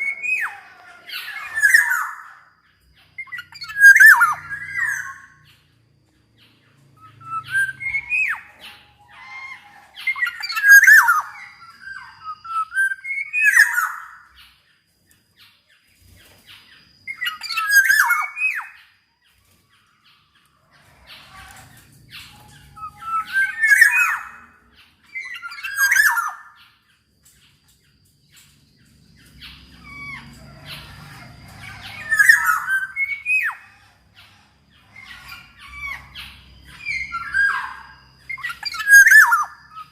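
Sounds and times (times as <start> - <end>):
oriole singing whistled notes: 0.0 - 5.8, 6.4 - 27.6, 28.2 - 39.9.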